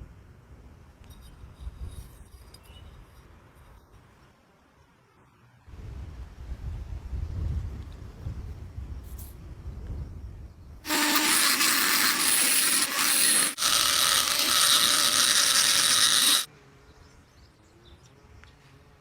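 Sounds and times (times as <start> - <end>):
loud mechanical noise: 10.9 - 16.5.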